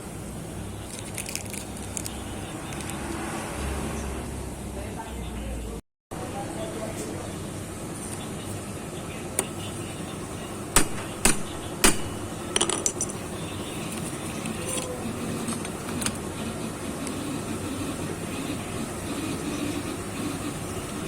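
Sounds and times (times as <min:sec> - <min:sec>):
steady background hum: 0:00.0 - 0:03.1, 0:04.4 - 0:21.0
sharp metallic knocks: 0:10.8 - 0:13.0.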